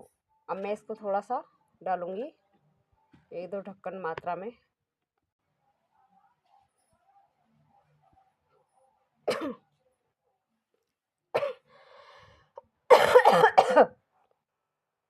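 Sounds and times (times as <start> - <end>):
person coughing: 9.3 - 9.6, 11.4 - 11.6, 12.9 - 13.9.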